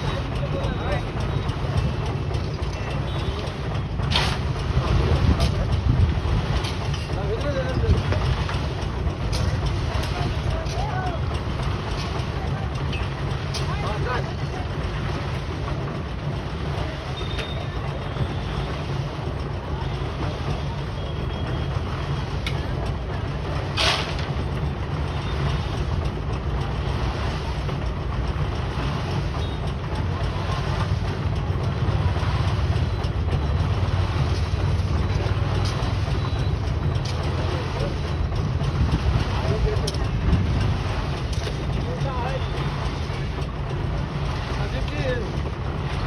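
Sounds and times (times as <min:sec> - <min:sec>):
heavy machinery engine rumble: 0:00.0 - 0:46.0.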